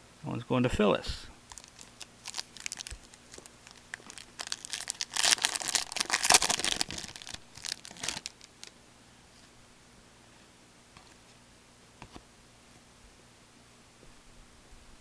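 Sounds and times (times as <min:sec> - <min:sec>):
wrapper crinkling and tearing: 0:01.5 - 0:08.7.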